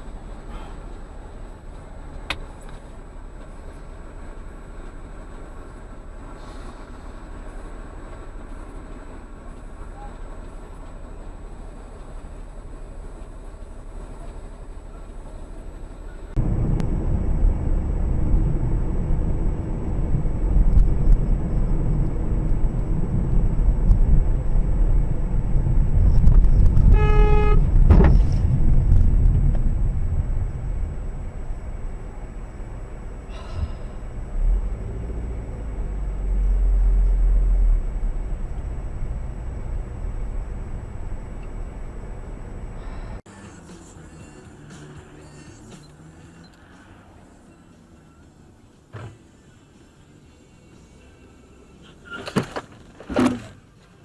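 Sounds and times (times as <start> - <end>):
car driving rumble: 0.0 - 54.0
car horn: 26.6 - 28.4.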